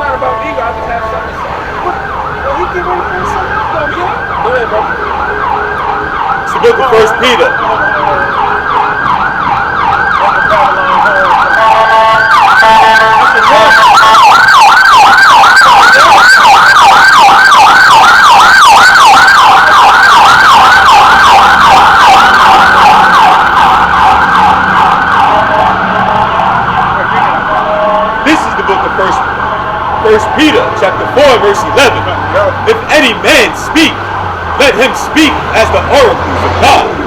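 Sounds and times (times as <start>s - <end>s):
emergency siren yelping: 0.0s - 37.0s.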